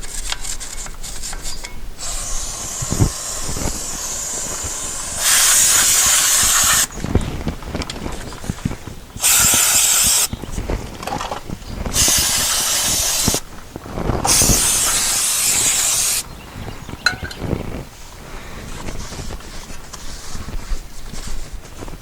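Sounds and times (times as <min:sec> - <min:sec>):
aerosol spray bursts: 0:02.0 - 0:06.9, 0:09.2 - 0:10.3, 0:11.9 - 0:13.4, 0:14.3 - 0:16.2
parts and tools clattering: 0:10.8 - 0:11.5, 0:17.0 - 0:17.5.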